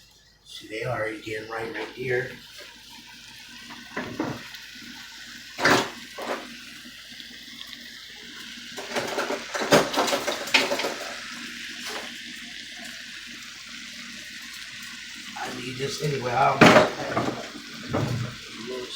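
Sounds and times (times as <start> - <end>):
running water hiss: 0.0 - 18.9
cookware clattering: 3.9 - 4.5, 5.6 - 6.5, 8.8 - 11.2, 16.5 - 18.4.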